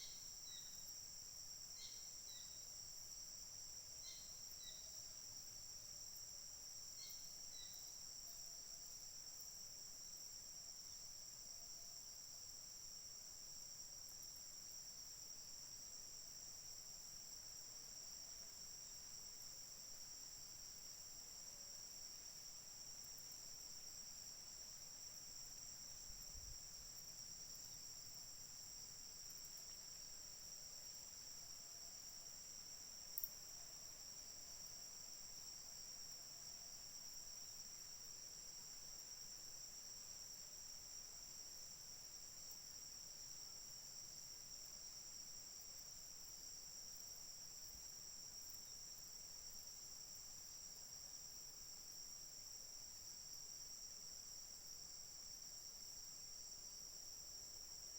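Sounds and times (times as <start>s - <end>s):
high-pitched insect chorus: 0.0s - 57.9s.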